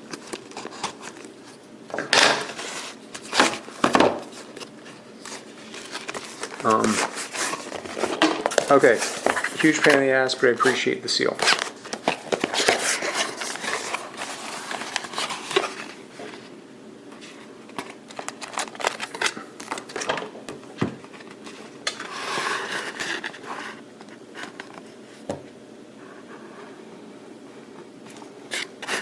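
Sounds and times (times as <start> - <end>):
plastic packaging crinkling: 2.5 - 16.0, 17.7 - 20.3.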